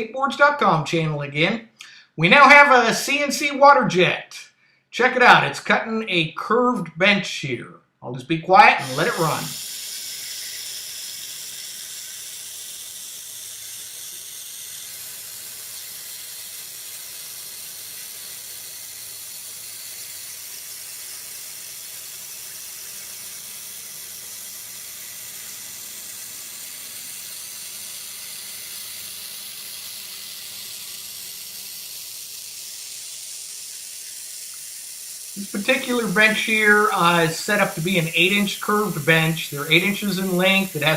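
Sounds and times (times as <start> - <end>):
water jet cutter hissing: 8.4 - 40.9.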